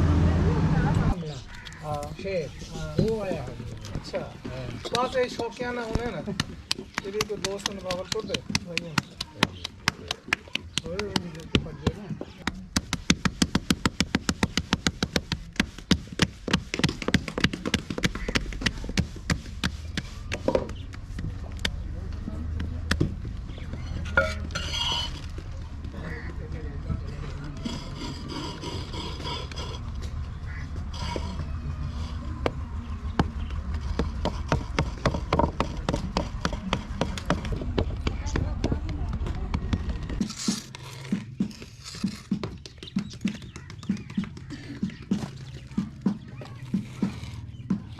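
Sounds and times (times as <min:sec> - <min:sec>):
sharp taps or knocks: 0:05.8 - 0:21.8.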